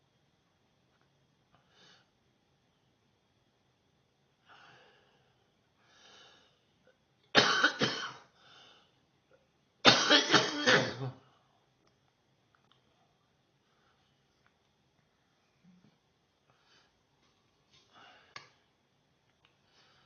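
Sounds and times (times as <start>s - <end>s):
faint breaths: 4.4s - 7.0s, 8.2s - 9.2s, 12.9s - 14.5s, 15.1s - 18.8s, 19.4s - 20.0s
person coughing: 7.4s - 8.3s, 9.9s - 11.2s.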